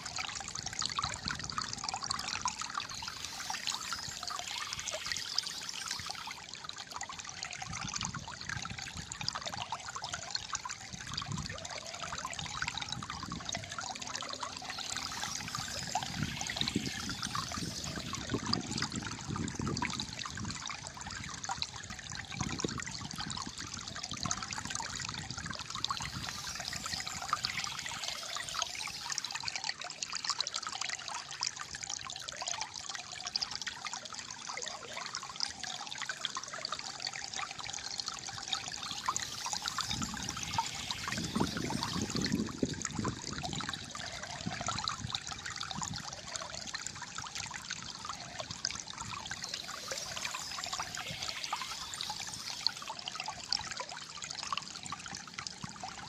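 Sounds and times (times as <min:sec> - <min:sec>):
water trickling and gurgling: 0:00.0 - 0:56.0.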